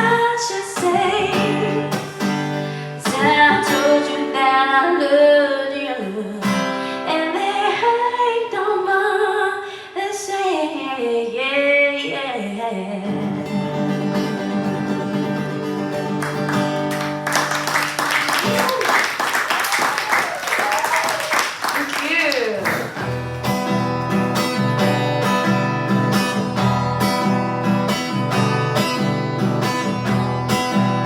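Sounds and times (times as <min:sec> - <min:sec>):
strummed acoustic guitar: 0:00.0 - 0:07.7, 0:13.0 - 0:18.6, 0:22.6 - 0:31.0
woman singing: 0:00.0 - 0:13.5.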